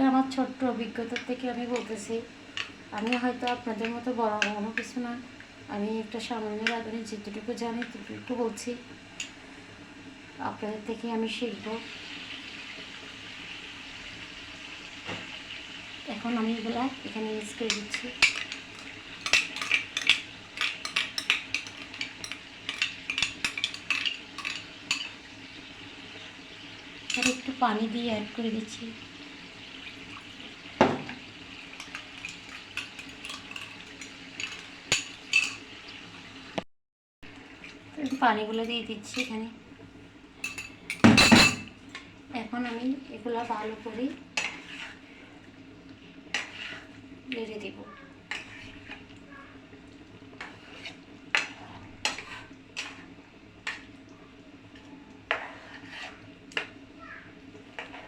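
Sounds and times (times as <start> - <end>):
spoon stirring paste in pan: 17.3 - 25.2, 43.5 - 45.1, 46.3 - 47.0, 48.3 - 49.1, 50.4 - 53.9, 55.2 - 56.8.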